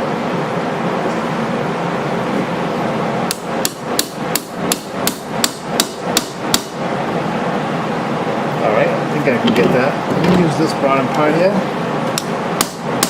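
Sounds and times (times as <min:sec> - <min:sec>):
hammer tapping a pin: 0:03.3 - 0:06.8.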